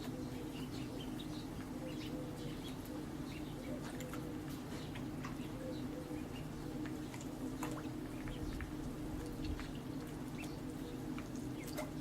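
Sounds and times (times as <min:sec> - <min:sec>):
ducks pecking and dabbling: 0:00.0 - 0:12.0
steady low hum: 0:00.0 - 0:12.0.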